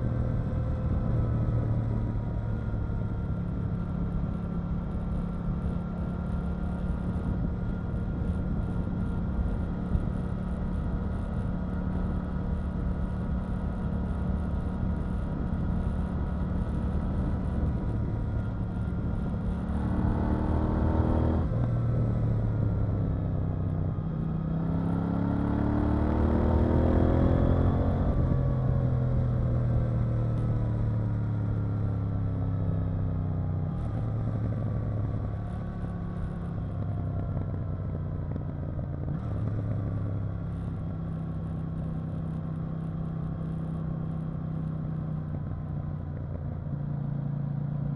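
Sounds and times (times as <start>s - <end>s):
motorcycle engine revving: 14.6s - 22.2s.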